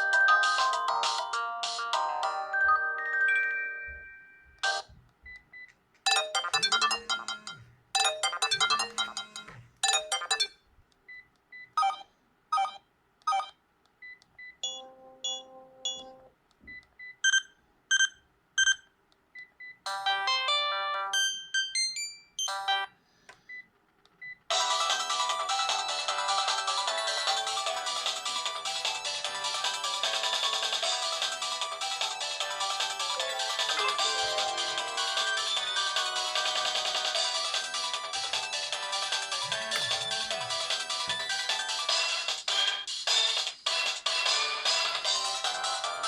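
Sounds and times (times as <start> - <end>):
mobile phone ringtones: 2.2 - 4.9, 6.1 - 10.6, 14.6 - 16.2, 19.9 - 22.9.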